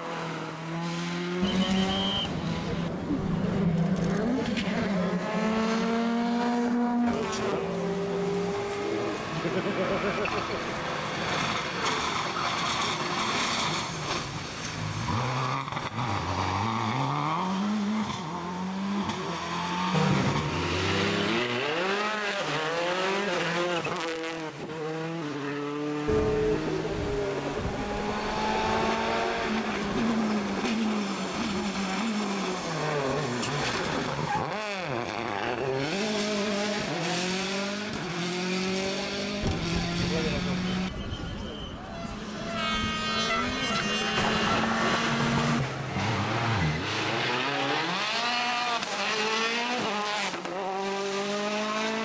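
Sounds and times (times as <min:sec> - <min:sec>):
rally car engines revving: 0:00.0 - 0:52.0
tyre squeal: 0:01.4 - 0:02.4, 0:40.6 - 0:44.4.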